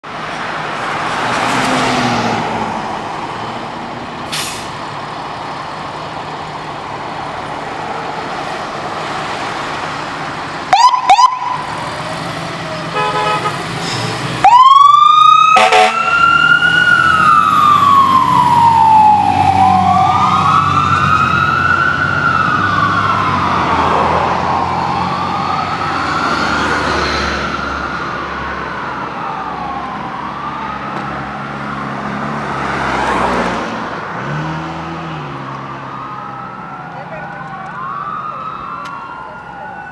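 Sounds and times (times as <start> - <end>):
fire truck engine: 0.0 - 39.9
traffic: 0.0 - 39.9
wailing siren: 10.6 - 13.6, 14.4 - 33.5, 35.2 - 39.9
air horn honks: 12.9 - 13.7, 15.6 - 16.2.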